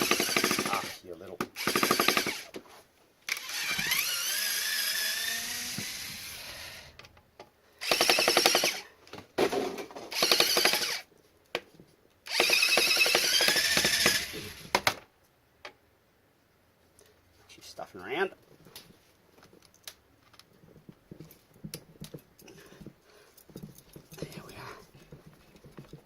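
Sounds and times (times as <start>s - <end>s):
power drill whining: 0.0s - 1.0s, 1.6s - 2.6s, 3.3s - 7.0s, 7.8s - 8.9s, 10.1s - 11.1s, 12.3s - 14.9s.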